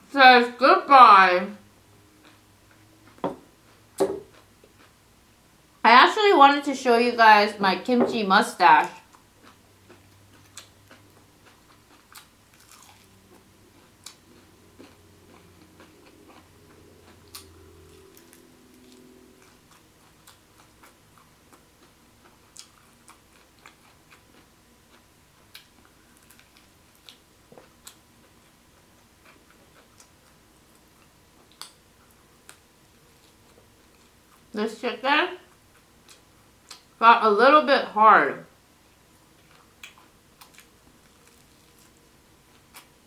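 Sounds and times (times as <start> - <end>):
chewing crispy fried chicken: 2.2 - 5.0, 8.9 - 34.5, 39.3 - 43.0.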